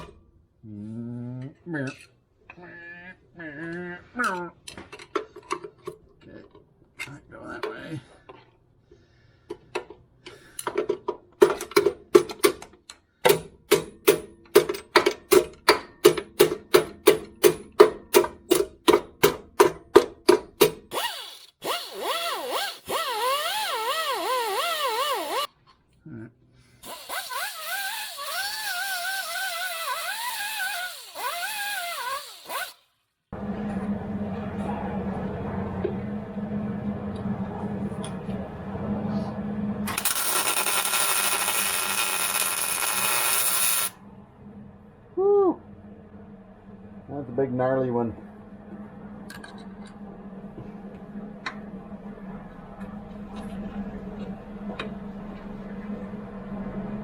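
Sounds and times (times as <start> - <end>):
angle grinder cutting metal: 20.9 - 25.5, 26.8 - 32.8, 39.9 - 44.0.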